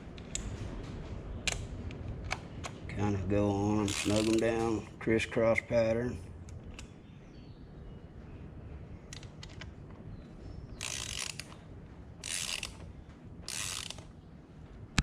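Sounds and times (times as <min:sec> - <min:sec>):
socket wrench ratcheting: 0:03.9 - 0:04.5, 0:10.8 - 0:11.6, 0:12.2 - 0:12.9, 0:13.5 - 0:14.1.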